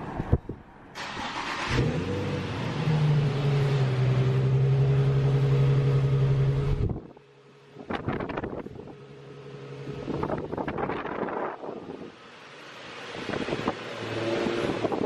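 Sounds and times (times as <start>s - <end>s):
car engine starting and idling: 0.9s - 15.0s.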